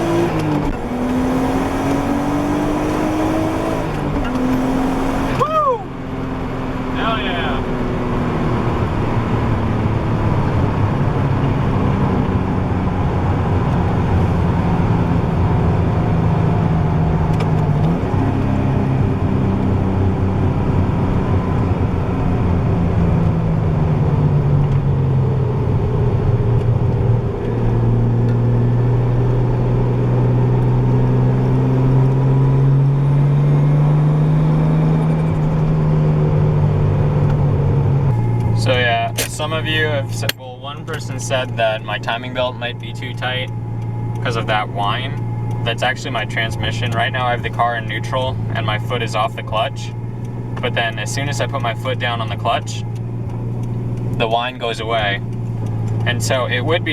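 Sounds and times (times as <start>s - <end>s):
faint transmission whine: 0.0s - 32.8s, 34.9s - 56.9s
loud car engine idling: 38.1s - 56.9s.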